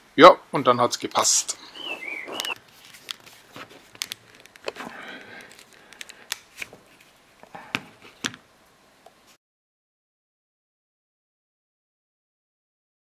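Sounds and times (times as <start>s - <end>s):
light rustling handling noises: 1.7s - 8.4s.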